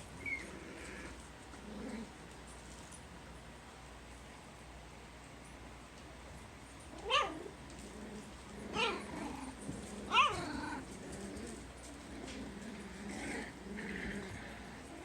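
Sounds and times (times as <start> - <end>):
puppies crying: 7.0 - 7.5, 8.7 - 9.5, 10.1 - 10.8.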